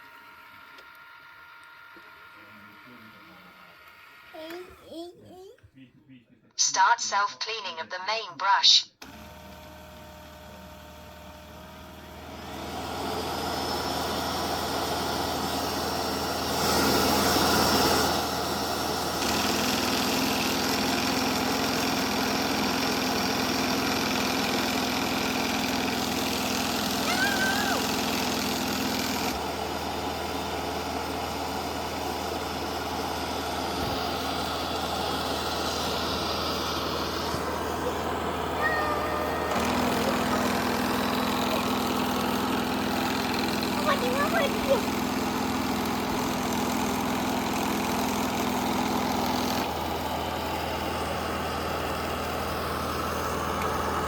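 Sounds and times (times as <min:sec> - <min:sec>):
robot vacuum motor running: 0:09.0 - 0:54.0
short high squeaks: 0:38.6 - 0:41.7.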